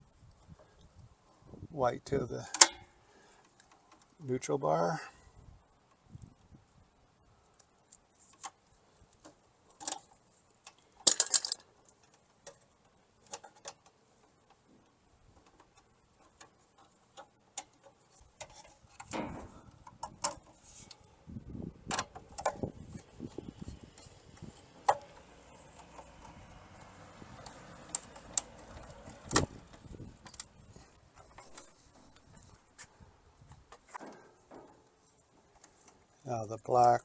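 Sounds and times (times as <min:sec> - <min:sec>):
handling and scraping noise: 0:07.3 - 0:37.0
hand tools clicking and tapping: 0:21.9 - 0:32.9.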